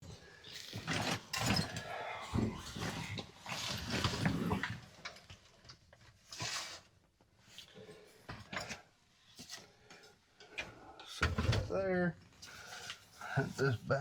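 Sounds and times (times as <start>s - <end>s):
scrape or rustle: 6.2s - 7.7s.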